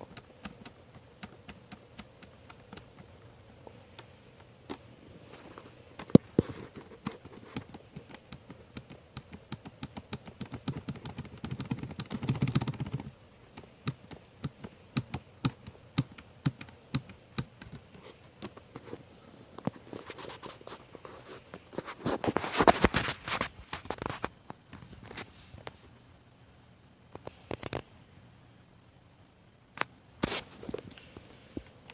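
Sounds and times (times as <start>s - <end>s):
rustling: 0.0s - 8.3s, 17.6s - 26.0s.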